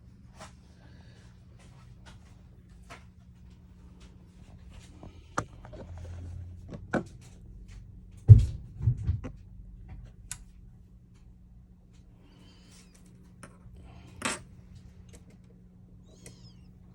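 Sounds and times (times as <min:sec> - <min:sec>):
dull thump: 0:08.3 - 0:09.3.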